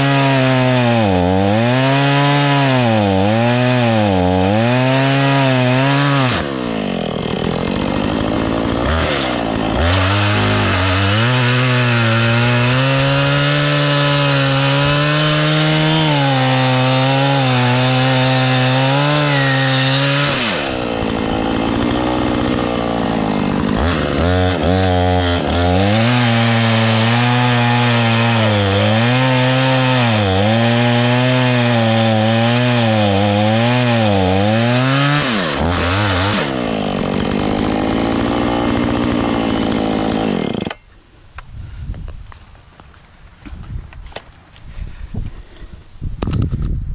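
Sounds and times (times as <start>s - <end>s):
chainsaw cutting wood: 0.0s - 40.9s.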